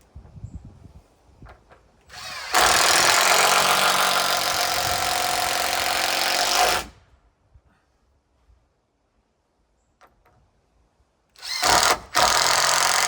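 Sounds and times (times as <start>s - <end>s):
drill driving screw into wood: 2.1s - 7.0s, 11.4s - 13.0s.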